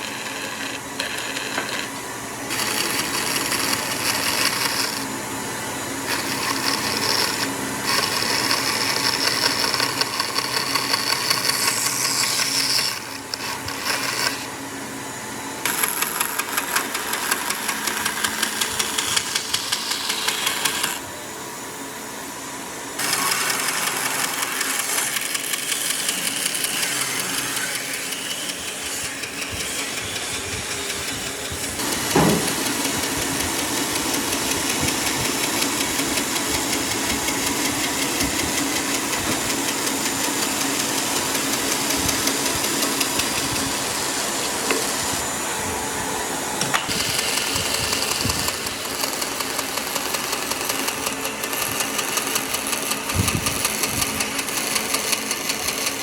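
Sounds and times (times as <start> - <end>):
power tool buzzing on wood: 0.0 - 21.3, 23.0 - 56.0
knock: 32.1 - 32.6.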